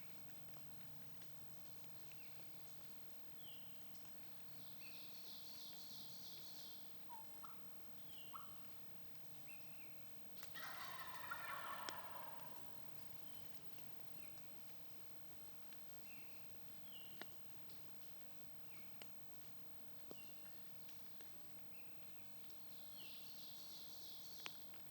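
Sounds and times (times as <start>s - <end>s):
small birds chirping: 1.5s - 19.4s
turkey gobbling: 7.1s - 8.7s, 10.4s - 13.4s.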